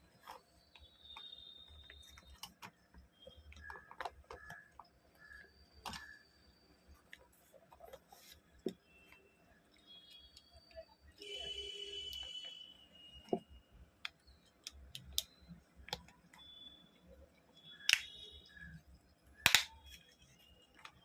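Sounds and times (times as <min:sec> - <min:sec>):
clicks and taps handling plastic: 0:00.2 - 0:06.2, 0:13.2 - 0:16.4, 0:19.4 - 0:21.0.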